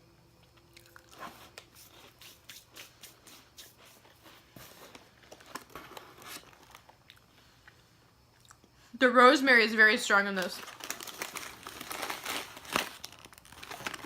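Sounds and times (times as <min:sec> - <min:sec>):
crisp crackers being chewed: 0:00.5 - 0:03.7, 0:05.2 - 0:08.8, 0:10.6 - 0:14.0.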